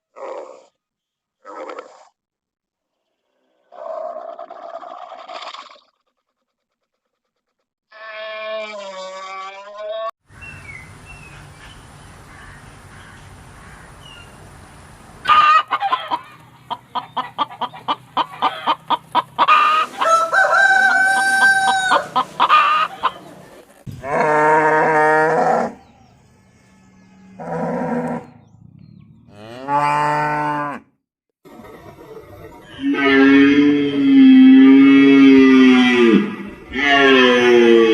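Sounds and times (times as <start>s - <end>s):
chickens clucking: 15.3s - 23.9s, 31.5s - 32.8s
rooster crowing: 19.5s - 23.0s
cow mooing: 24.0s - 28.5s, 29.2s - 30.9s, 32.8s - 37.9s.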